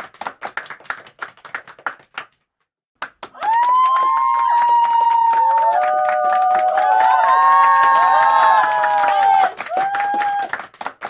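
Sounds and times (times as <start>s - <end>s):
applause: 0.0s - 11.0s
crowd cheering and shouting: 3.4s - 10.6s.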